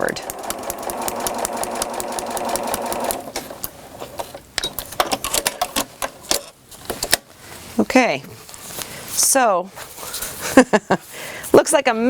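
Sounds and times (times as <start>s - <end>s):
sewing machine stitching: 0.0s - 4.1s.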